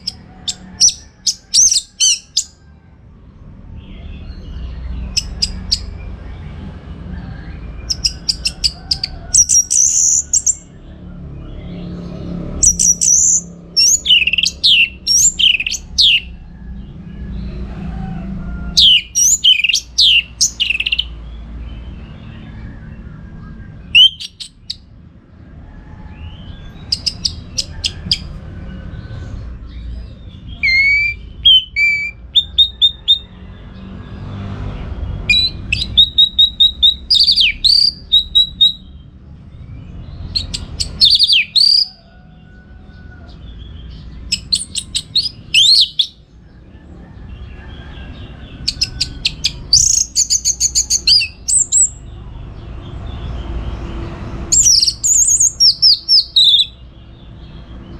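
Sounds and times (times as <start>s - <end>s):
thrush singing: 12.2s - 16.4s, 18.7s - 21.1s, 23.3s - 24.8s, 30.4s - 33.3s, 40.4s - 42.0s.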